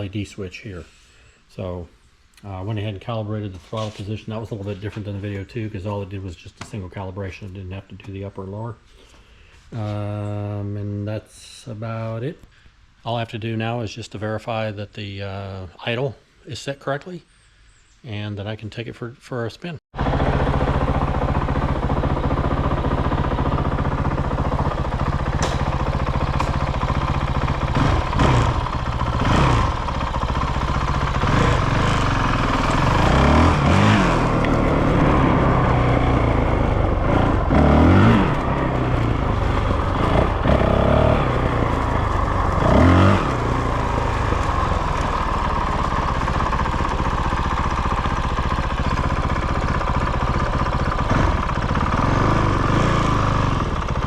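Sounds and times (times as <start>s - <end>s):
motorcycle engine idling and revving: 20.0s - 54.0s.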